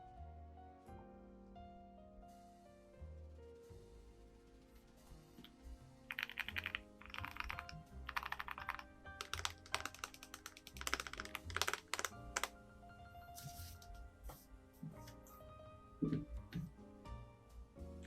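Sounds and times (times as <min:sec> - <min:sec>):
background music: 0:00.0 - 0:18.0
keyboard typing clacks: 0:06.1 - 0:12.5.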